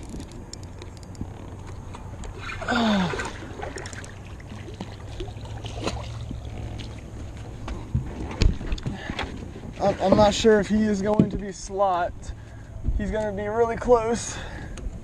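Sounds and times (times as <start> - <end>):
low wind rumble on microphone: 0.0 - 15.0
water lapping and splashing: 0.8 - 10.6.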